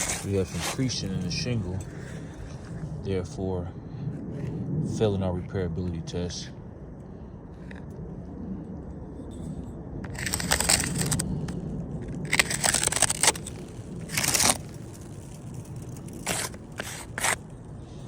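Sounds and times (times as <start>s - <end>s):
gritty scraping and crunching: 0.0s - 3.1s, 9.2s - 18.0s.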